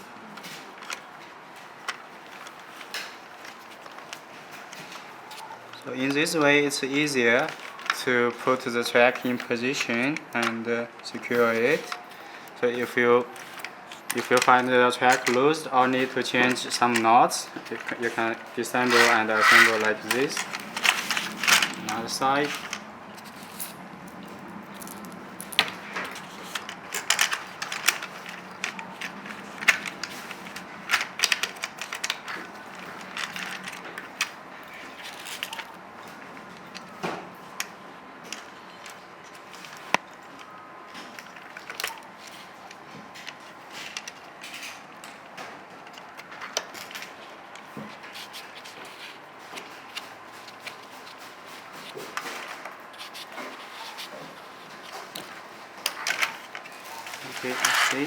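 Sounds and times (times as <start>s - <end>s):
small metal parts clicking: 7.4s - 45.2s, 54.8s - 58.0s.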